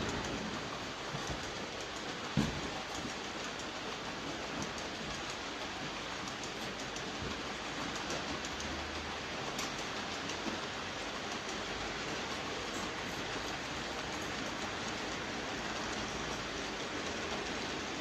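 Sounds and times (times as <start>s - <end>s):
train wheels on rails: 0.0s - 18.0s
faint clicks: 4.4s - 18.0s.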